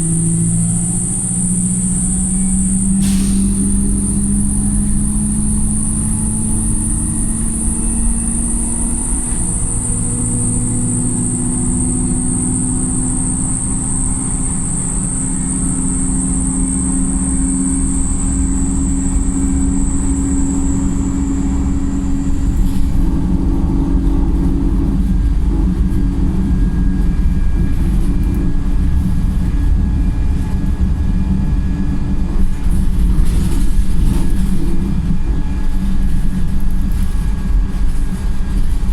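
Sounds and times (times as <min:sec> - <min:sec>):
bus engine pulling: 0:00.0 - 0:38.9
high-pitched whine: 0:00.0 - 0:38.9
bus body rattles and knocks: 0:20.8 - 0:38.9.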